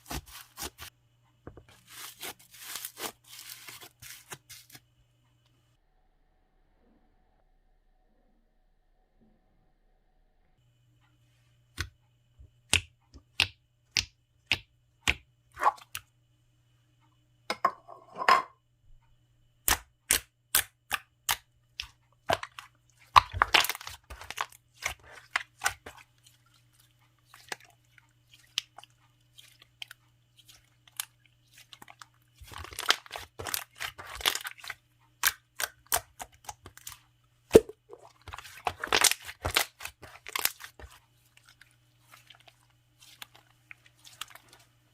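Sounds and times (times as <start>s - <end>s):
slime popping and crackling: 22.3s - 25.8s, 32.4s - 37.7s, 38.3s - 40.9s.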